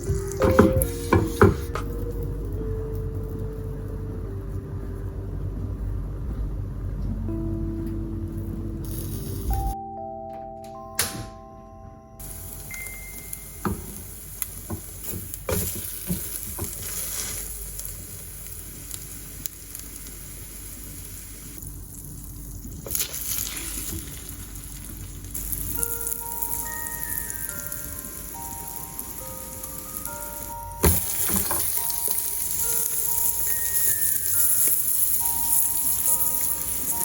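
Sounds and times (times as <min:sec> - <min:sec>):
background music: 0:00.0 - 0:14.1, 0:25.7 - 0:37.0
toast sizzling in a pan: 0:12.2 - 0:37.0.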